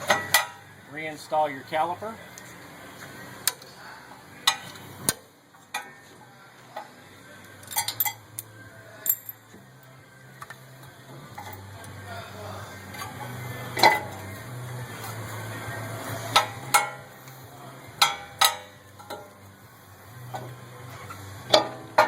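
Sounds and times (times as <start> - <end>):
metal clinks and clanks: 7.6 - 8.2, 9.0 - 9.4.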